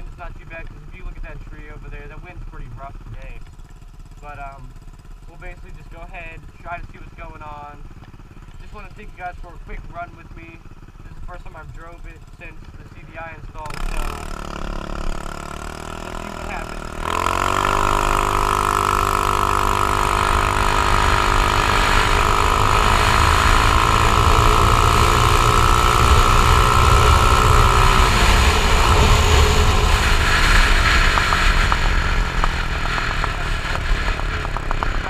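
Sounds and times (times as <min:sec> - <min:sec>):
scooter engine accelerating: 0:00.0 - 0:35.0.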